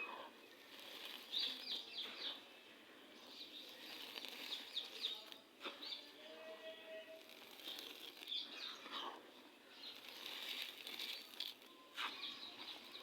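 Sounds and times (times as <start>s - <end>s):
sand crumbling and crunching: 0.5s - 2.4s, 3.2s - 5.9s, 6.9s - 8.9s, 9.7s - 13.0s.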